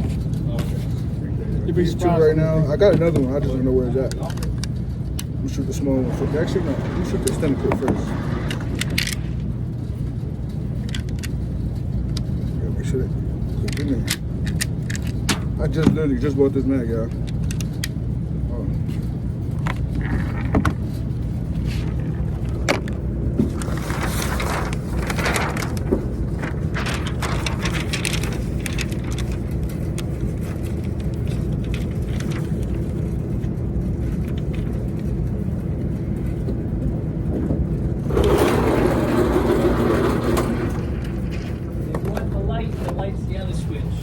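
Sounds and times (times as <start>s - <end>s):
road noise: 0.0s - 44.0s
car engine drone in cabin: 3.0s - 38.1s.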